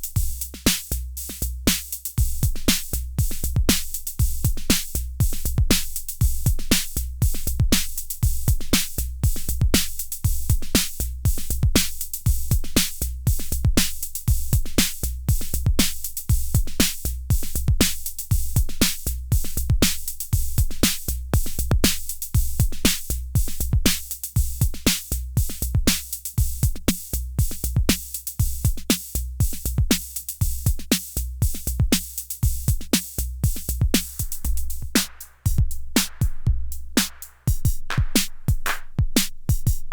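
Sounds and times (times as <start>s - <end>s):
deep kick drum: 0.0s - 39.9s.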